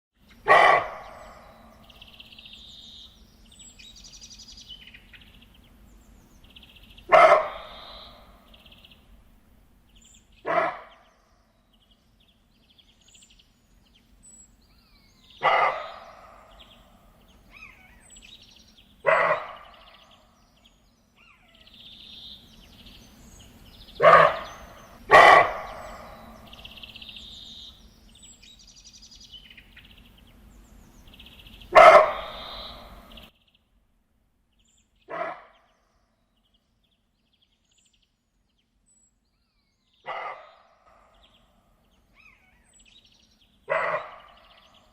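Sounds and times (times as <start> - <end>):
birds chirping faintly: 0.1 - 44.9
deer barking calls: 0.5 - 1.9, 7.1 - 8.4, 10.4 - 11.1, 15.4 - 16.8, 19.0 - 20.2, 24.0 - 26.8, 31.7 - 33.2, 35.1 - 35.6, 40.0 - 41.2, 43.7 - 44.9.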